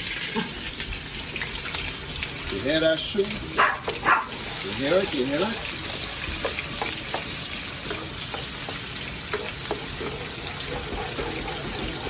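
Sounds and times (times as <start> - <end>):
onions sizzling in a pot: 0.0 - 12.0.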